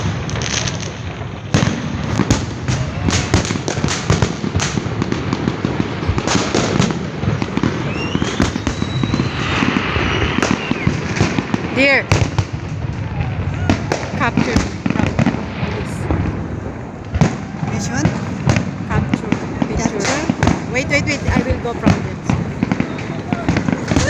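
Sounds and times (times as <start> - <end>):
rising firework whistle: 0.0 - 18.5
fireworks bangs and crackles: 0.0 - 24.0.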